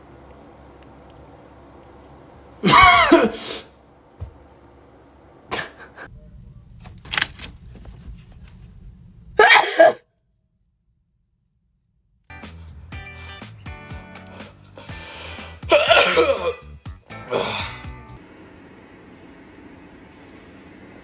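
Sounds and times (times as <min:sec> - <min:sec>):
person sneezing: 0:02.6 - 0:03.7, 0:05.5 - 0:06.1, 0:09.4 - 0:10.0, 0:14.4 - 0:17.9
small vocal noises: 0:14.2 - 0:17.9.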